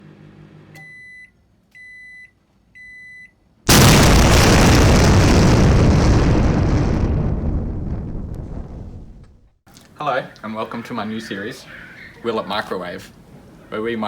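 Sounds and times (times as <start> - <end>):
explosion boom: 3.7 - 9.5.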